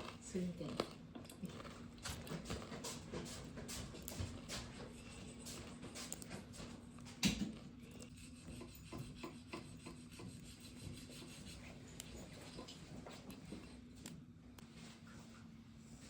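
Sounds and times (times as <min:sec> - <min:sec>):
hands rubbing dough: 0:01.5 - 0:13.9.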